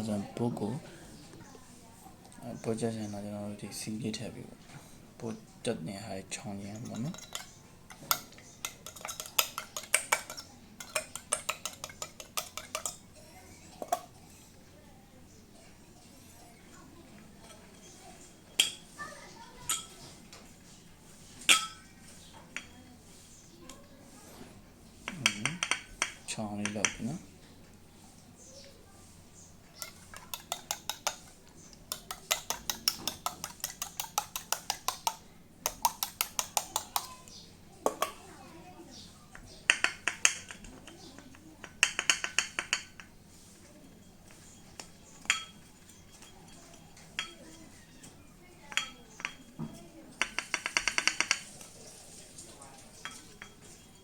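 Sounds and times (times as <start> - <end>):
metal parts and tools clinking: 6.6 - 13.0
rapid light metal tapping: 6.7 - 14.4, 25.0 - 27.2, 29.4 - 38.2, 39.3 - 54.0.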